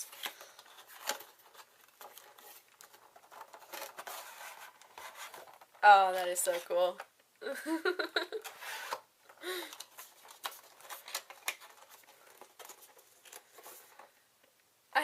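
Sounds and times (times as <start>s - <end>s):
plastic and cardboard crinkling: 0.0s - 7.1s, 8.4s - 14.2s
person speaking: 5.8s - 7.6s.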